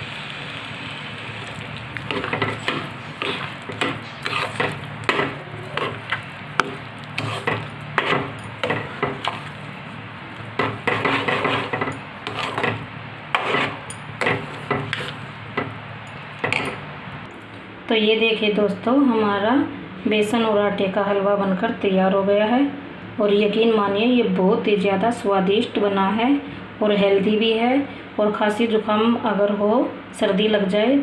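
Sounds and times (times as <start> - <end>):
spoon scraping cooking pan: 1.4 - 15.7.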